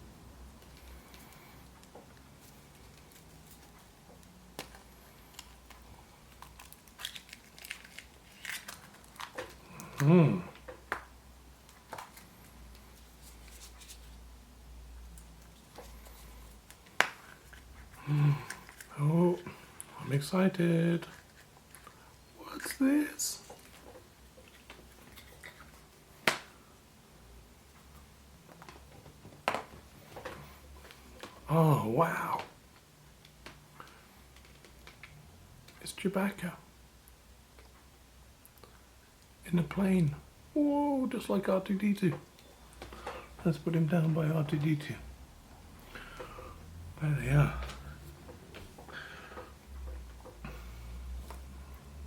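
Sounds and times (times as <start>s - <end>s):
plastic clicks and crinkling: 0.6s - 12.9s.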